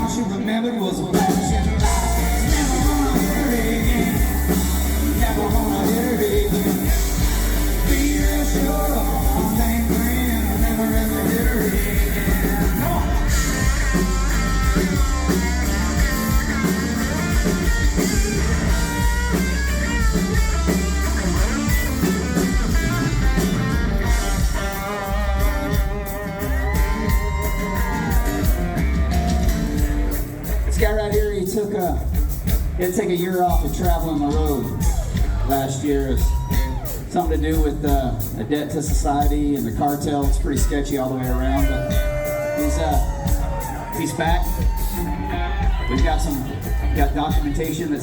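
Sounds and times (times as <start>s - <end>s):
person singing: 0.0s - 19.0s
electric guitar: 0.0s - 32.8s
bass guitar: 0.0s - 48.0s
steady drum beat: 0.0s - 48.0s.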